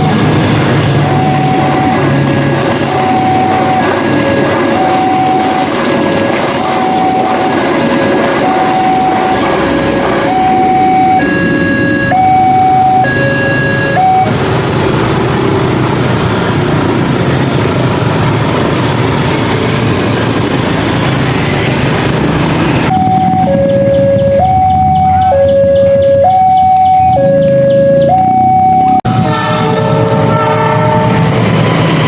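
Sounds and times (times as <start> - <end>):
level-crossing two-tone alarm: 0.0 - 14.4, 22.9 - 29.4
train passing: 0.0 - 32.0.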